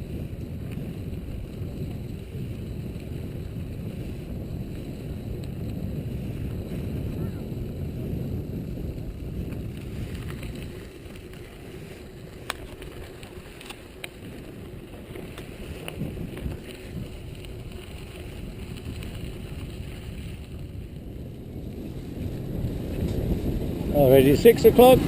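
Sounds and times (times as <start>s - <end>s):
tyre noise on dirt track: 0.0s - 25.0s
wind rumbling on microphone: 0.0s - 25.0s
bike rattling clicks: 4.7s - 7.0s, 8.6s - 23.7s.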